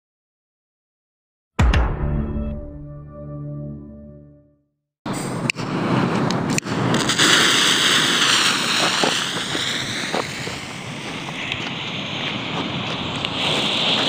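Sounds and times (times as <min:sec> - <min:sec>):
firework fountain rushing hiss: 0:05.2 - 0:14.0
firework cracks: 0:05.5 - 0:14.0.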